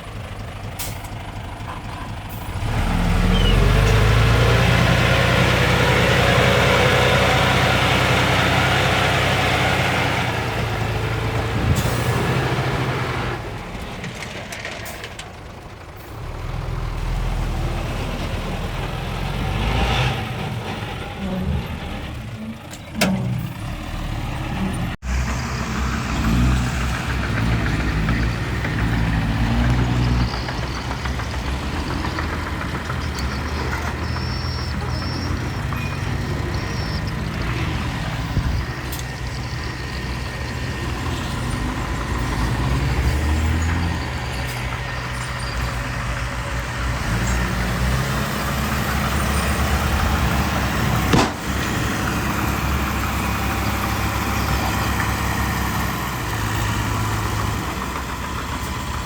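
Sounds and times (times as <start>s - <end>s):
diesel engines running: 0.0s - 59.0s
sharp bang: 51.1s - 51.8s.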